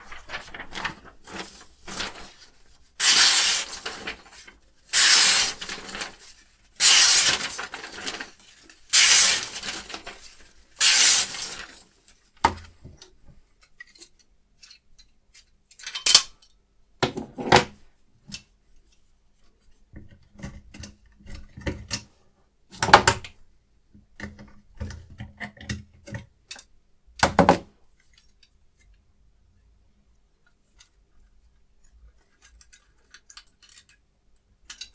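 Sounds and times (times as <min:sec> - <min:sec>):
metal parts clicking: 0:34.6 - 0:34.9.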